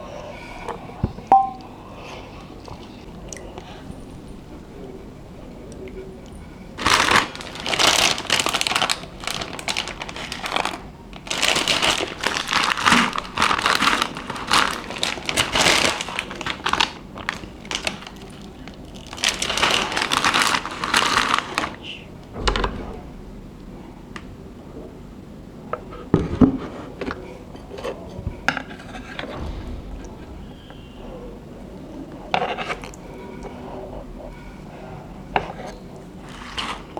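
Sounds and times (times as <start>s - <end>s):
plastic packaging crinkling: 6.8s - 22.1s
soft low thump: 22.3s - 24.2s, 29.4s - 32.2s.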